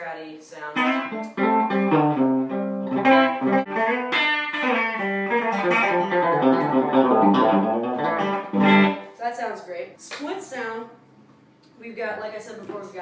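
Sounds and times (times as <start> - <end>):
electric guitar picked notes and chords: 0.8 - 9.1.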